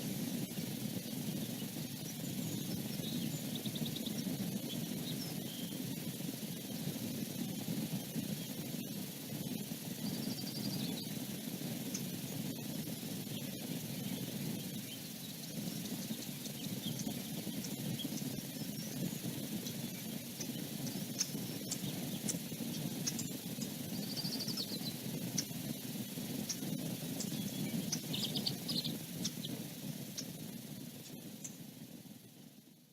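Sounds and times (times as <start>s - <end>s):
low outdoor rushing noise: 0.0s - 32.9s
high twittering bird calls: 0.3s - 31.7s
faint scattered clicks: 26.4s - 31.7s.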